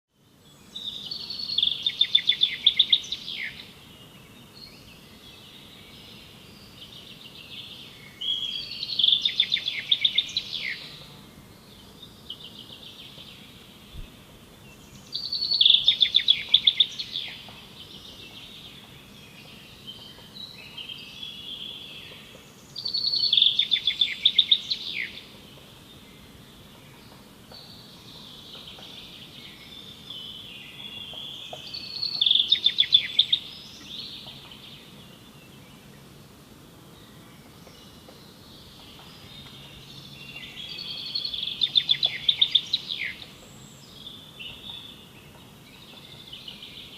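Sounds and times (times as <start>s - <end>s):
faint forest background: 0.1s - 46.9s
songbird rapid trilled song: 6.5s - 11.2s, 14.7s - 26.0s, 26.9s - 35.8s, 37.6s - 46.9s.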